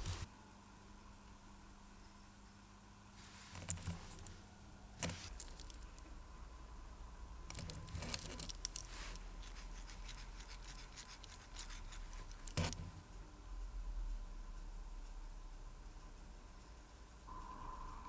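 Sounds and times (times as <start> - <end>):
faint steady hum: 0.0 - 18.0
small tools clicking on watch parts: 3.4 - 4.4, 5.0 - 6.1, 7.5 - 12.9.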